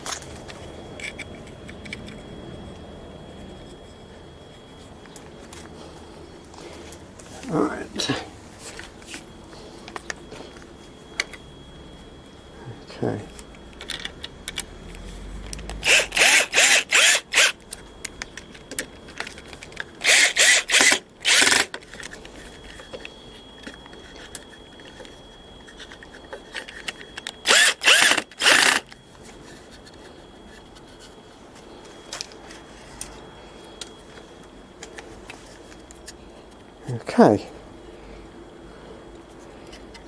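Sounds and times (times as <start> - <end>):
cordless drill bursts: 15.8 - 17.6, 20.0 - 21.7, 27.4 - 28.9.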